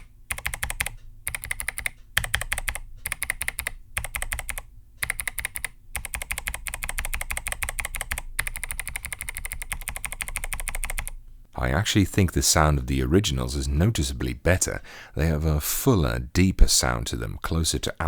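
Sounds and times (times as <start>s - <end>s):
rapid clicky keyboard typing: 0.0s - 11.2s.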